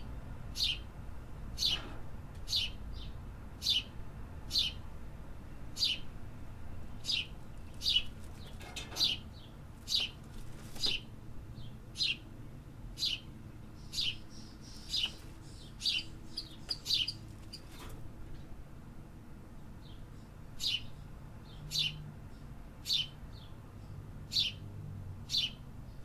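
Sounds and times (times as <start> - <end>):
bird chirping: 0.5 - 0.9, 1.6 - 1.8, 2.5 - 3.9, 4.5 - 4.8, 5.8 - 6.1, 7.0 - 10.2, 10.8 - 12.3, 13.0 - 18.5, 19.8 - 24.6, 25.3 - 26.0.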